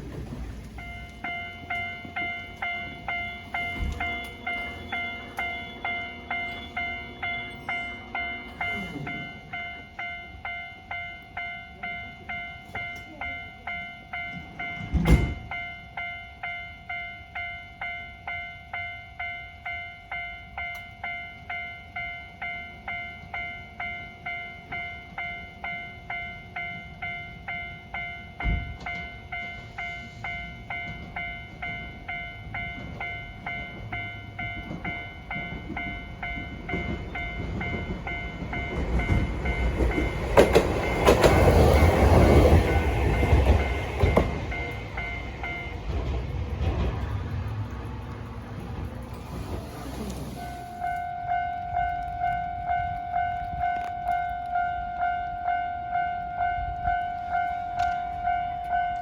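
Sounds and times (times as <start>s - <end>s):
tram rumbling: 0.0s - 59.0s
level crossing bell ringing: 0.8s - 46.2s
thump: 14.9s - 15.4s
wheels clicking over rail joints: 30.8s - 59.0s.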